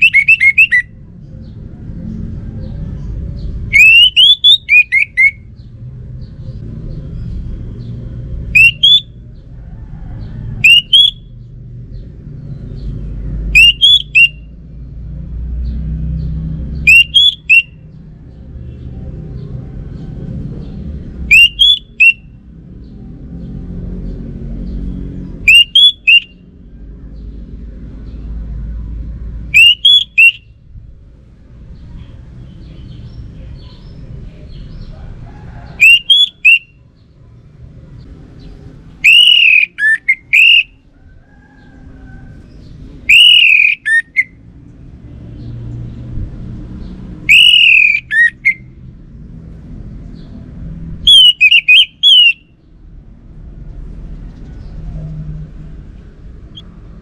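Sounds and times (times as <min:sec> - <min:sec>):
thrush singing whistled phrases: 0:00.0 - 0:00.9, 0:03.7 - 0:05.5, 0:08.5 - 0:09.2, 0:10.6 - 0:11.3, 0:13.5 - 0:14.5, 0:16.8 - 0:17.8, 0:21.3 - 0:22.4, 0:25.4 - 0:26.4, 0:29.5 - 0:30.5, 0:35.8 - 0:36.8, 0:39.0 - 0:40.8, 0:43.0 - 0:44.4, 0:47.2 - 0:48.7, 0:51.0 - 0:52.6.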